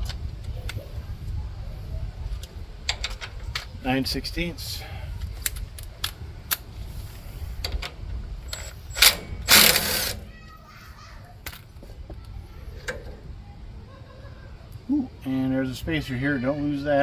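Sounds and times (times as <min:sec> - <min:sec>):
loud noisy bursts: 0:08.5 - 0:10.3
ratchet wrench clicking: 0:08.5 - 0:10.3.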